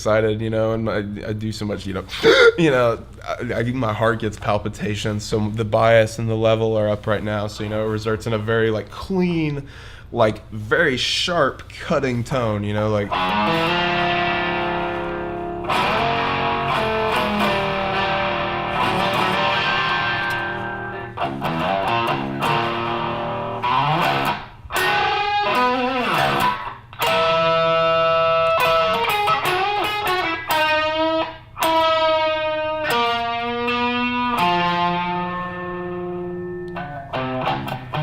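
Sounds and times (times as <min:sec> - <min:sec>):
electric guitar lead licks: 0:13.1 - 0:38.0.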